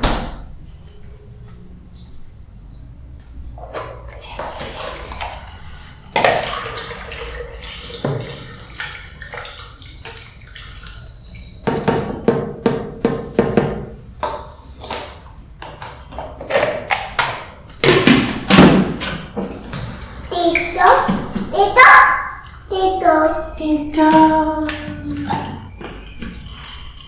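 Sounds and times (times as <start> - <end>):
water running with high ring: 3.6 - 12.4, 19.4 - 27.0.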